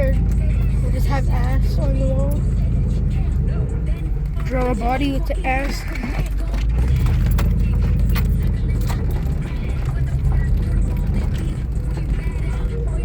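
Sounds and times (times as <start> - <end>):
pickup truck rumbling off-road: 0.0 - 13.0
knocks and rattles: 4.2 - 13.0.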